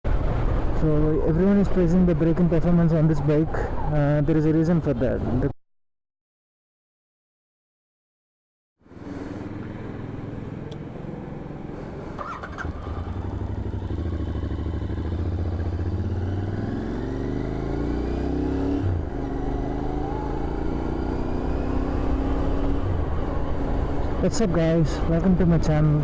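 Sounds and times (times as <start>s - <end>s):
motorcycle engine accelerating: 9.0s - 25.2s.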